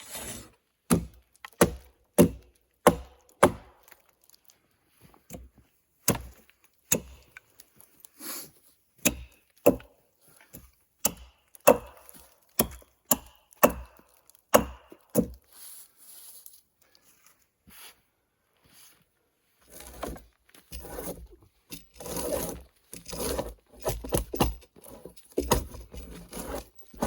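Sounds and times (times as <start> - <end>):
hand tool striking wood: 0.9 - 3.9, 6.1 - 7.3, 9.0 - 9.9, 10.5 - 15.4, 22.0 - 27.0.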